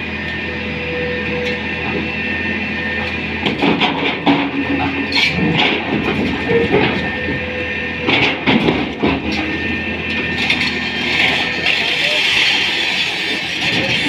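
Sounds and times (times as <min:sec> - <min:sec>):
excavator engine hum: 0:00.0 - 0:14.0
metal clanks and clatter: 0:03.0 - 0:14.0.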